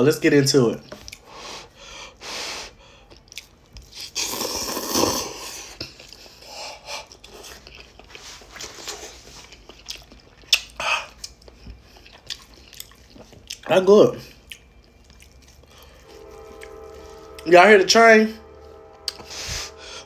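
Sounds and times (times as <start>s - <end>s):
noisy eating: 0.8s - 16.0s
person chewing and crunching: 2.9s - 16.0s.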